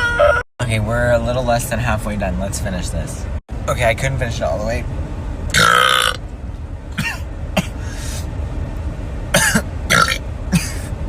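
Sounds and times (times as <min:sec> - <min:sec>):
man burping: 0:05.5 - 0:06.2, 0:09.4 - 0:10.7
coughs and throat-clearing: 0:07.0 - 0:07.8, 0:09.3 - 0:10.8.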